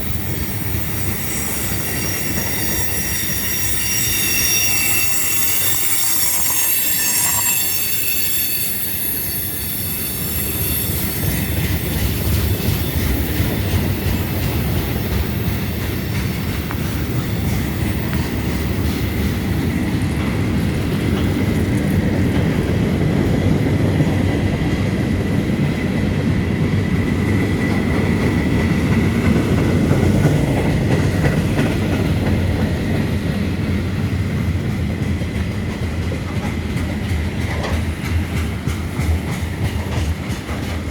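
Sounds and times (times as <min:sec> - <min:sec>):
high-pitched wheel squeal: 0:00.0 - 0:12.0
train wheels rumbling on rails: 0:00.0 - 0:40.9.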